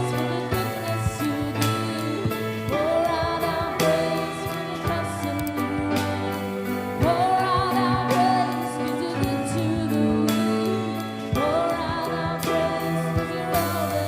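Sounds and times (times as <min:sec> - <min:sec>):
person singing long notes: 0:00.0 - 0:14.0.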